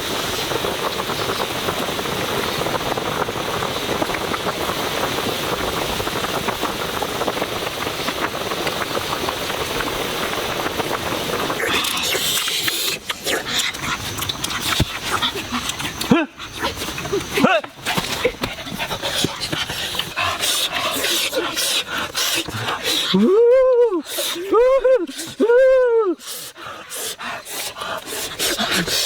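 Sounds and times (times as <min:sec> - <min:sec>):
fire crackling hiss: 0:00.0 - 0:29.0.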